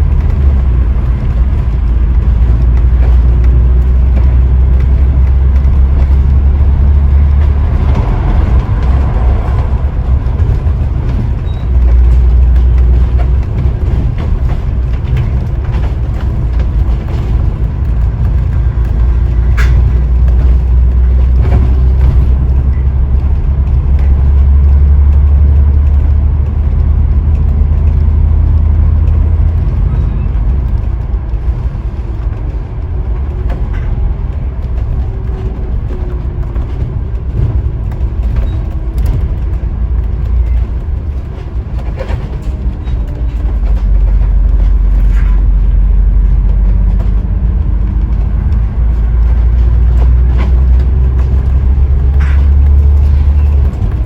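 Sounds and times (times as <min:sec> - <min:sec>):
bus engine and road drone: 0:00.0 - 0:54.0.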